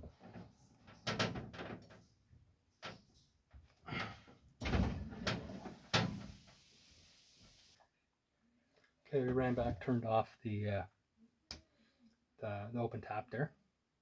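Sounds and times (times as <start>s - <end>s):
door opening and closing: 4.0s - 6.5s.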